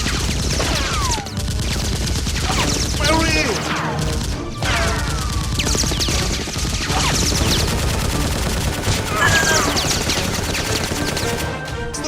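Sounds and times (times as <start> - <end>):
rapid automatic gunfire: 0.0 - 12.0
falling whistle-like tones: 9.1 - 11.3.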